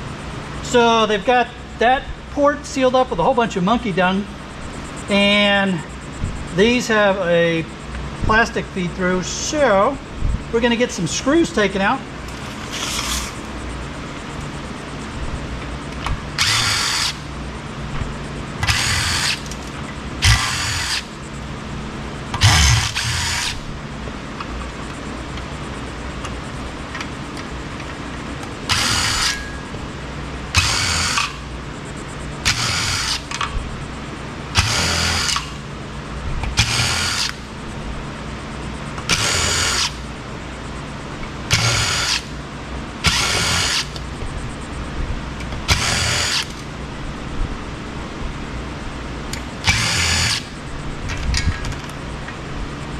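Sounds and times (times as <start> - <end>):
power drill whirring: 12.3 - 13.5, 16.4 - 17.3, 18.6 - 21.1, 22.4 - 23.6, 28.7 - 29.5, 30.6 - 31.4, 32.4 - 33.4, 34.6 - 35.6, 36.6 - 37.5, 39.1 - 40.0, 41.5 - 42.3, 43.0 - 44.0, 45.7 - 46.6, 49.6 - 50.5.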